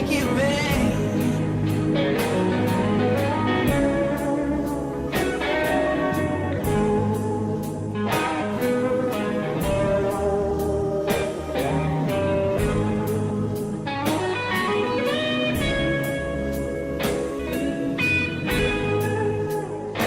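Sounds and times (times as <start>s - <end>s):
bass guitar: 0.0s - 20.0s
drums steady beat: 0.0s - 20.0s
electric guitar lead: 0.0s - 20.0s.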